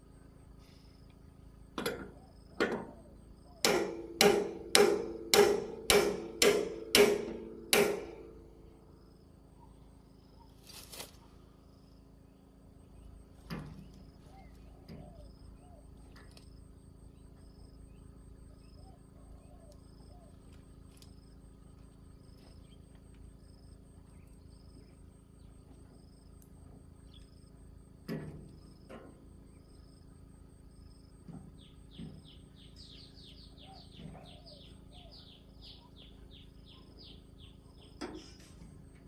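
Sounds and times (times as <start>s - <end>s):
hammer striking metal: 3.6s - 8.4s.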